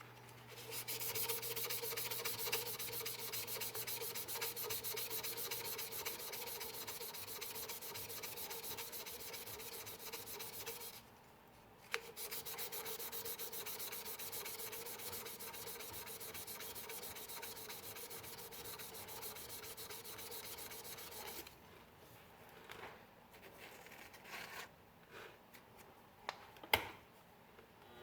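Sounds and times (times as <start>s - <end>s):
sandpaper on spinning lathe: 0.5s - 11.0s, 12.0s - 21.5s.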